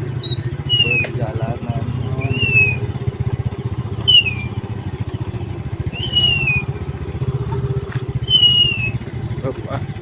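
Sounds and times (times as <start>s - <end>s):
small motorcycle engine humming: 0.0s - 10.0s.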